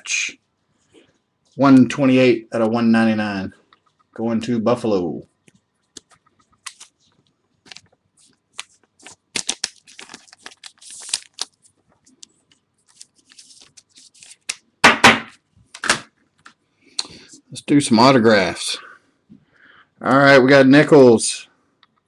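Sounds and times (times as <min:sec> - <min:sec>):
plastic card sleeves rustling: 0:05.4 - 0:14.6.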